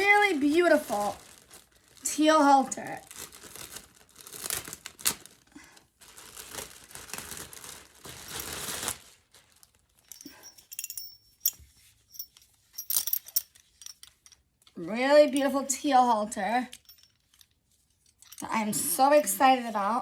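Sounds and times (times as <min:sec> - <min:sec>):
packaging bag crinkling: 0:00.0 - 0:10.2.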